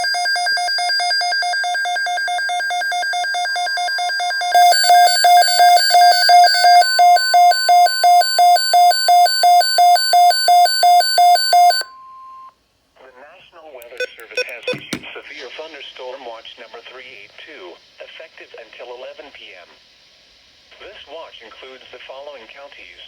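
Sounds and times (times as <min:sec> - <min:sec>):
steady alarm tone: 0:00.0 - 0:11.9
electronic alarm beeping: 0:00.0 - 0:12.5, 0:13.9 - 0:15.0.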